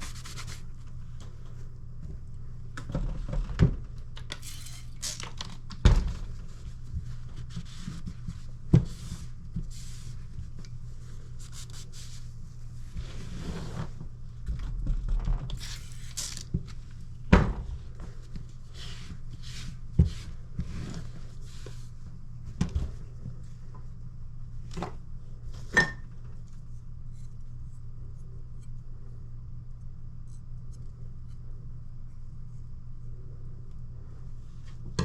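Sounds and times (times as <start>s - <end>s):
knife scraping on sharpening stone: 4.4s - 5.2s, 15.6s - 16.4s.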